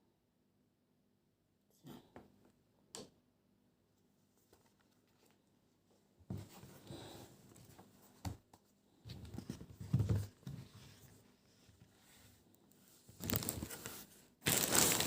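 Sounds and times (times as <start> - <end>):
rustling package handling: 13.2 - 15.0.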